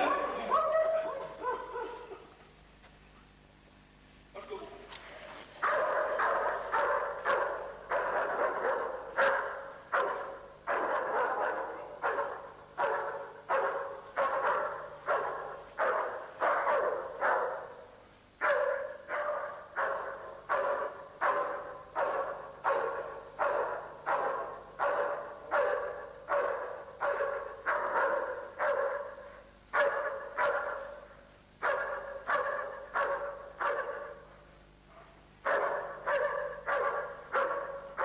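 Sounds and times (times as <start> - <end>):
dog barking: 0.0 - 2.2, 5.6 - 38.0.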